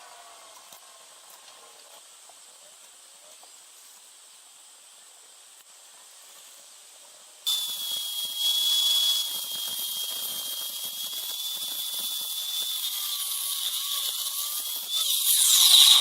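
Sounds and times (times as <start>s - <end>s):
small electric motor whining: 7.5s - 16.0s.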